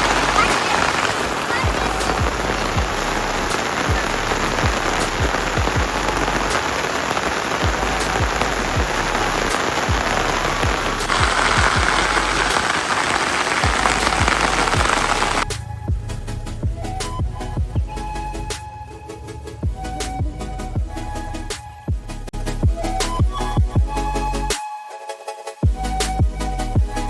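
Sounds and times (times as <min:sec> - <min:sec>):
rain pattering: 0:00.0 - 0:15.5
background music with thumping beat: 0:01.5 - 0:06.6, 0:13.6 - 0:27.0.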